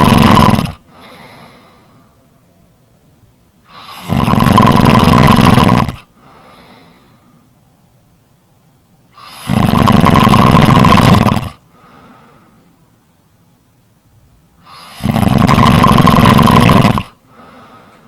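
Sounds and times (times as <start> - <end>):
loud snoring: 0.0 - 0.9, 3.7 - 6.1, 9.2 - 11.6, 14.6 - 17.2.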